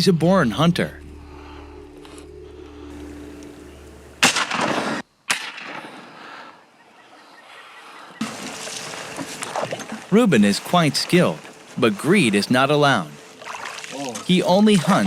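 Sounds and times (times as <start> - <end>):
steady low hum: 0.0 - 5.0.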